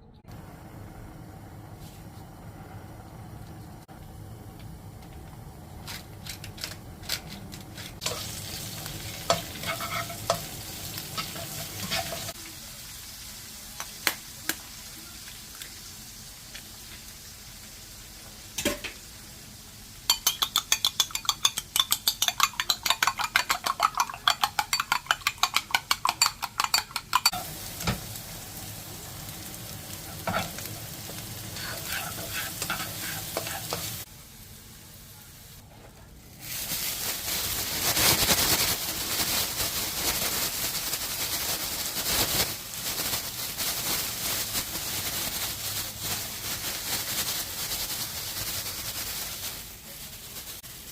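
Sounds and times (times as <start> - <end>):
fried rice sizzling in a pan: 8.0 - 50.9
utensil scraping and clacking on pan: 9.0 - 12.4, 20.1 - 27.5, 30.1 - 34.1.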